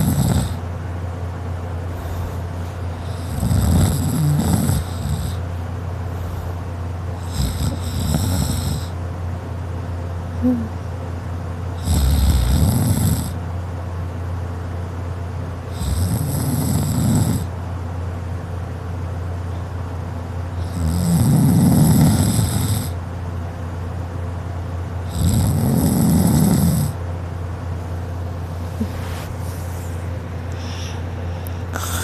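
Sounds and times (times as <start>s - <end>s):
woman snoring loudly: 0.0s - 0.6s, 3.0s - 5.4s, 7.2s - 9.0s, 10.4s - 10.7s, 11.8s - 13.4s, 15.7s - 17.5s, 20.6s - 23.0s, 25.1s - 27.0s, 31.7s - 32.0s
steady low hum: 0.0s - 32.0s.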